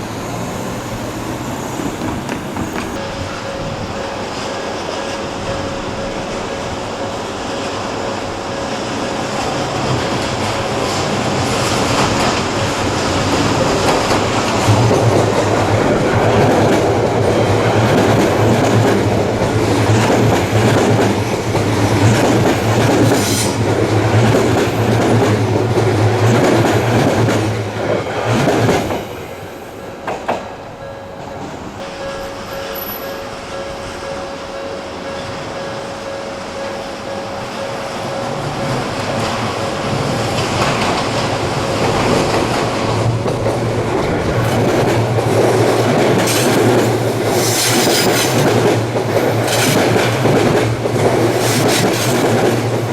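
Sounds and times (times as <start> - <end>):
train motor hum: 0.0 - 27.8
train wheels clattering over rail joints: 38.3 - 52.9.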